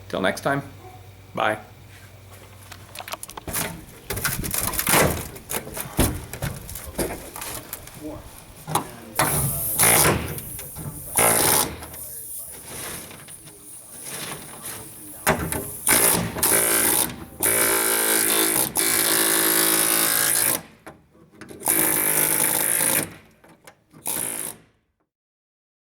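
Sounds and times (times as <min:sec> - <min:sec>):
power tool running: 0:03.4 - 0:20.8, 0:21.6 - 0:23.3, 0:24.0 - 0:24.6.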